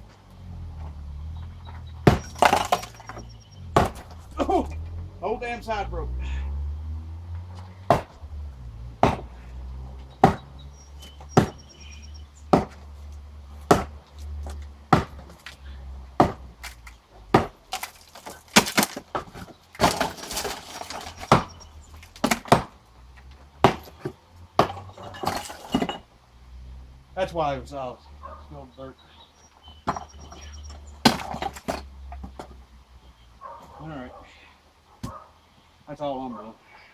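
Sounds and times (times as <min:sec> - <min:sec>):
debris clattering: 0:00.7 - 0:05.0, 0:16.2 - 0:26.1, 0:29.8 - 0:32.6
sledgehammer breaking concrete: 0:02.0 - 0:04.6, 0:09.0 - 0:09.4, 0:10.2 - 0:10.5, 0:11.4 - 0:11.7, 0:12.5 - 0:12.8, 0:13.7 - 0:14.0, 0:14.9 - 0:15.4, 0:16.2 - 0:22.8, 0:23.6 - 0:26.0, 0:30.0 - 0:31.8.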